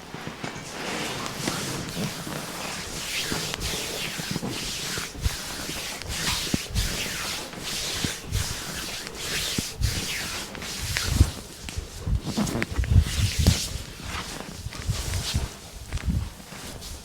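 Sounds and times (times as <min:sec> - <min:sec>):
hands rubbing over skin: 0:01.0 - 0:17.0.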